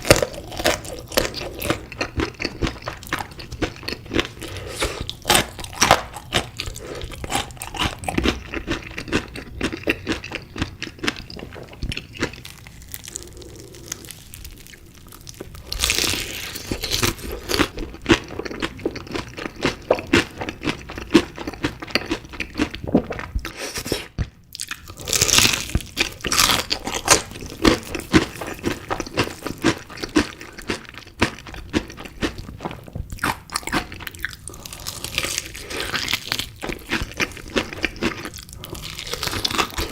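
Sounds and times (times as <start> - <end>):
chewing: 0.0 - 39.9
crunchy bites: 24.6 - 39.9.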